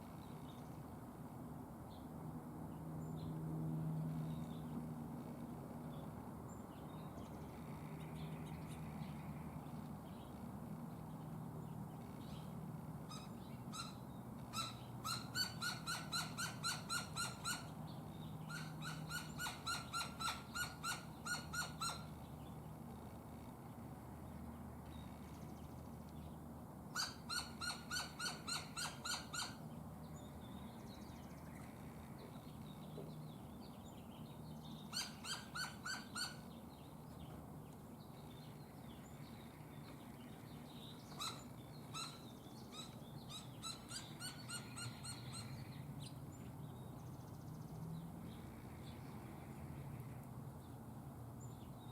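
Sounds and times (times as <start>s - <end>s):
faint low hum: 0.0s - 15.3s.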